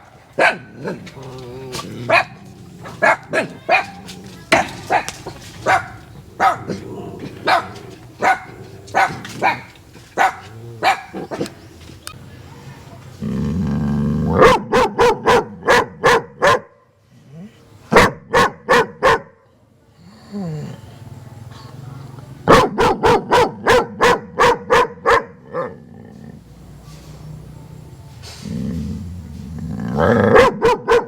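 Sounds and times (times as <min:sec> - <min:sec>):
dog barking: 0:00.0 - 0:01.1, 0:02.0 - 0:11.6, 0:14.3 - 0:16.9, 0:17.9 - 0:19.4, 0:22.4 - 0:25.8, 0:30.0 - 0:31.0.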